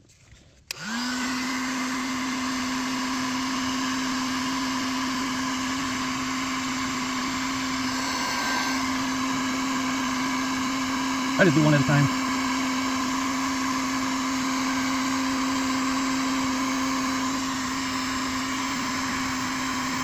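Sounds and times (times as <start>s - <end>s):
heat gun fan motor humming: 0.7s - 20.0s
hot air hissing: 7.7s - 9.6s.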